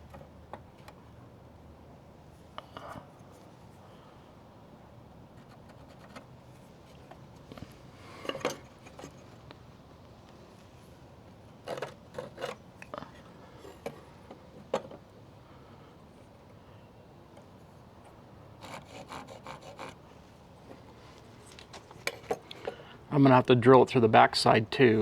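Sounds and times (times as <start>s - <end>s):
tools clattering when handled: 21.4s - 22.8s.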